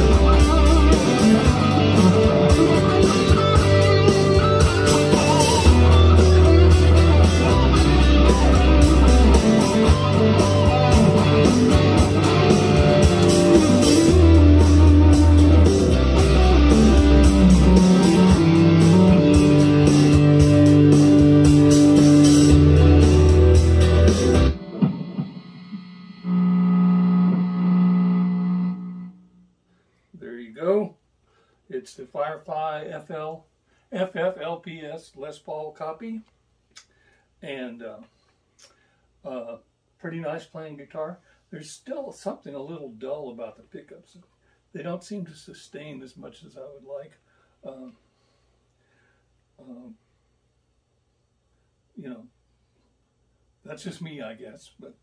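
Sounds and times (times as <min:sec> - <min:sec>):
drums and bass backing: 0:00.0 - 0:26.5
electric guitar: 0:00.0 - 0:29.4
guitar chord ringing: 0:00.0 - 0:29.6.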